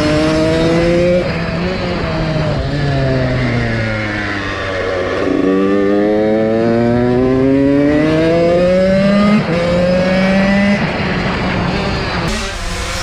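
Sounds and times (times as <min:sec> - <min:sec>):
motocross bike engine accelerating: 0:12.3 - 0:13.0.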